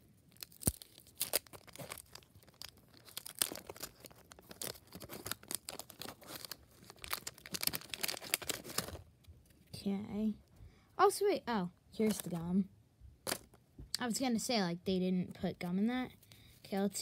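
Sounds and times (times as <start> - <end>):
wax paper wrapper tearing: 0.3 - 9.1.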